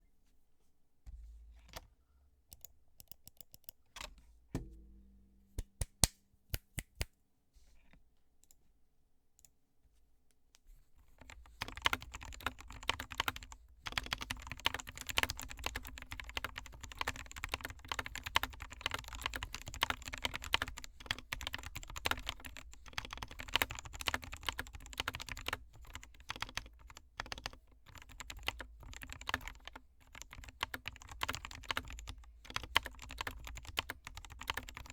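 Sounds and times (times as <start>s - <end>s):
mechanical keyboard typing: 11.6s - 34.9s.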